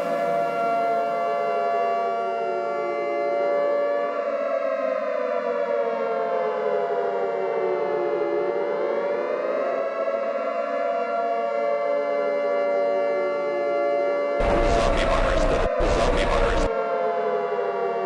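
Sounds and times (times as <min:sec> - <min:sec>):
air-raid siren wailing: 0:00.0 - 0:18.0
steady droning tone: 0:14.4 - 0:16.7.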